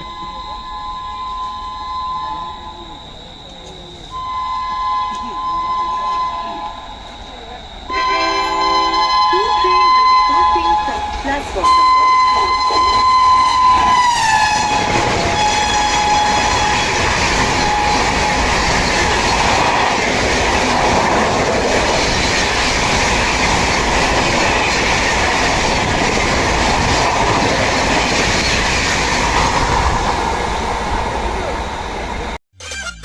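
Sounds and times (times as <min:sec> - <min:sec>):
train coaches rushing past: 0:01.0 - 0:32.4
locomotive horn blast: 0:04.2 - 0:07.0, 0:07.9 - 0:19.8.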